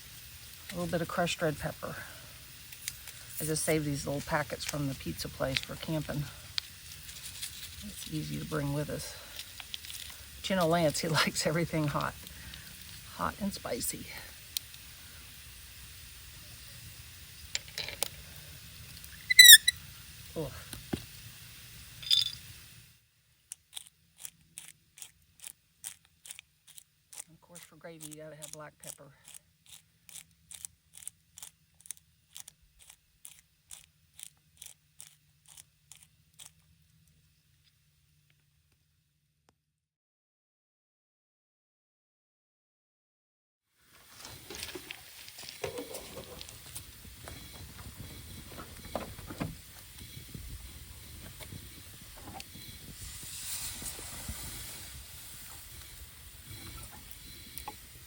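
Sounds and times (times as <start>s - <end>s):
pan hissing over fire: 0.0s - 23.0s, 43.8s - 58.0s
pepper grinder crunching: 9.2s - 10.3s, 19.0s - 19.7s, 23.5s - 37.2s.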